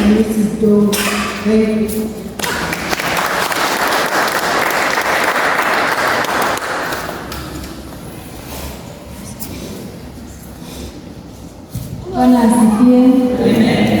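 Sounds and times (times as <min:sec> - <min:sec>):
crowd applauding: 0:02.4 - 0:07.6.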